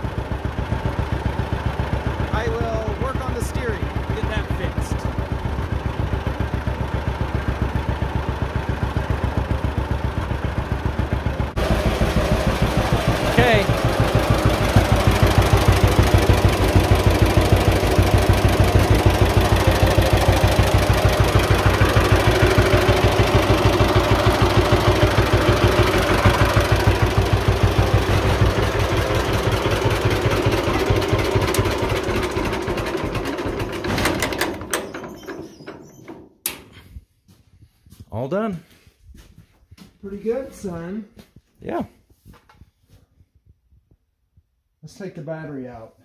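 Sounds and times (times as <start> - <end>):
tractor engine idling: 0.0 - 35.8.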